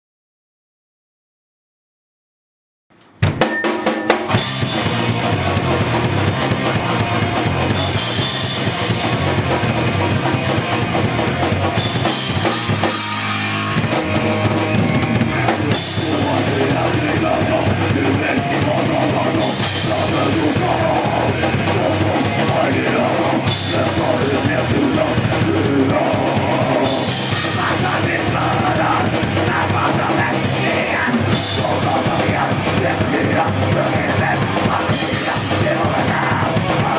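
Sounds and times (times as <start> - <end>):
rock band playing: 3.2 - 36.9.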